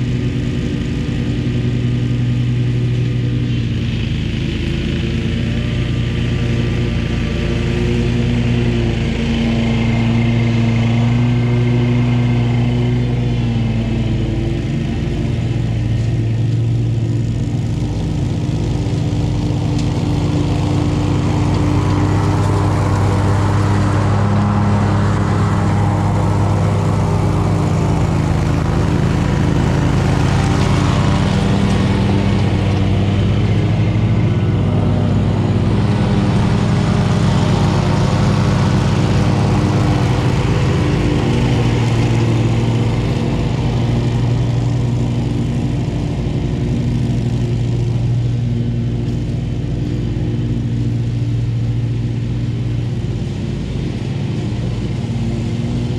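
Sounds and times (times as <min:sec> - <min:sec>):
lawn mower engine droning: 0:00.0 - 0:55.9.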